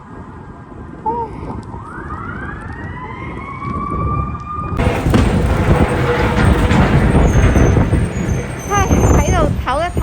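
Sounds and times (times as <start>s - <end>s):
emergency vehicle siren: 1.7s - 5.2s
loud rush of noise: 4.8s - 10.0s.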